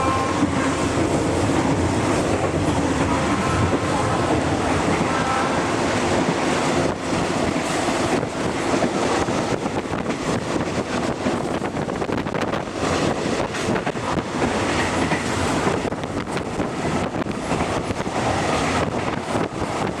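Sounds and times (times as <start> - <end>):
train wheels rumbling on track: 0.0 - 20.0.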